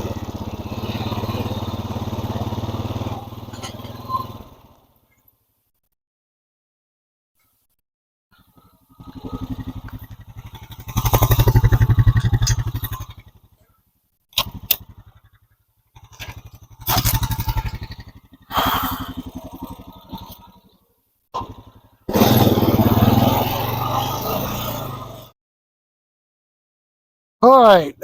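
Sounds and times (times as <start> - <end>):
small gasoline engine revving: 0.0 - 4.9, 8.4 - 13.6, 14.4 - 20.8, 21.4 - 25.4.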